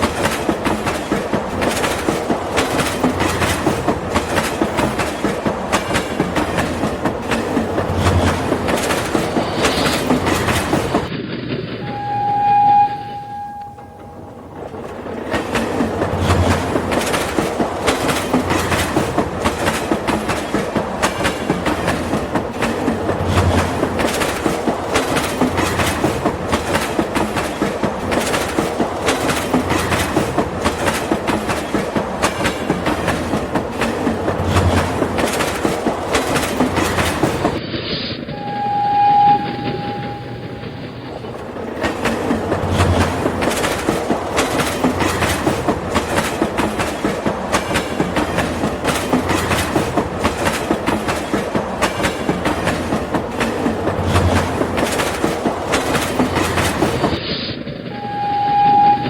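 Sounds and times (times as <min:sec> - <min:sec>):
train clickety-clack on track: 0:00.0 - 0:59.0
train horn held note: 0:11.8 - 0:14.4, 0:38.3 - 0:41.0, 0:57.9 - 0:59.0.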